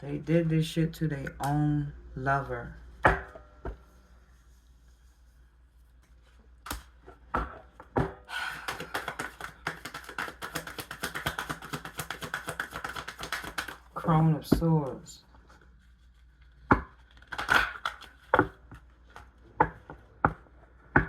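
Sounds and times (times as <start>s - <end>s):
cards tapping: 6.6s - 14.7s, 16.7s - 20.5s
cards being shuffled: 8.6s - 14.0s, 15.5s - 19.4s.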